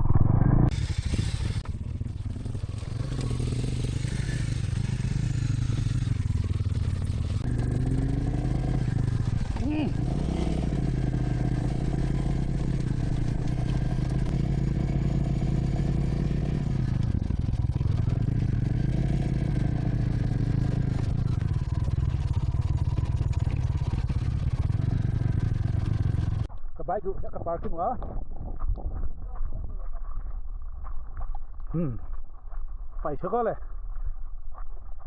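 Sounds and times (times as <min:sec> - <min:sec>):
motorcycle engine running: 0:00.0 - 0:26.5.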